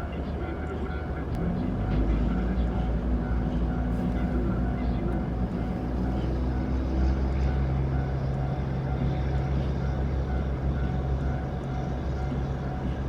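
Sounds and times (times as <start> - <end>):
freight train low drone: 0.0 - 13.0.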